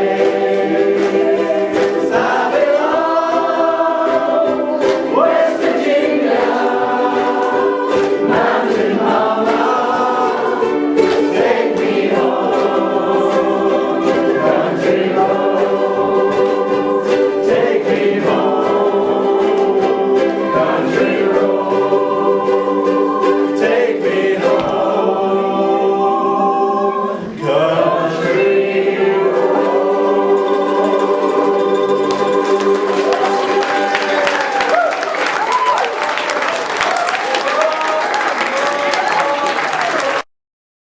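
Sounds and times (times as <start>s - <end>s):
group singing in chorus: 0.0s - 34.8s
strummed ukuleles: 0.0s - 40.0s.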